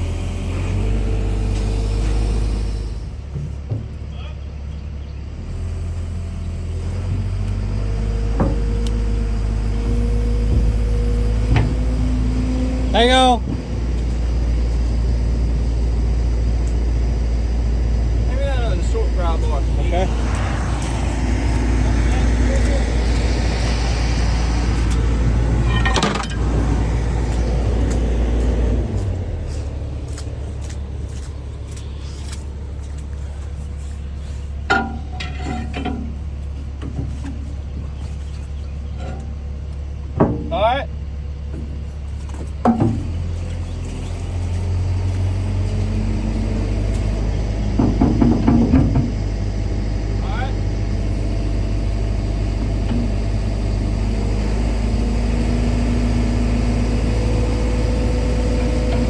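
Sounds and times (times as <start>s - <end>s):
engine humming: 0.0s - 59.0s
steady whine: 5.7s - 37.9s, 48.9s - 59.0s
metal tools clanking: 24.8s - 28.0s, 31.2s - 39.5s.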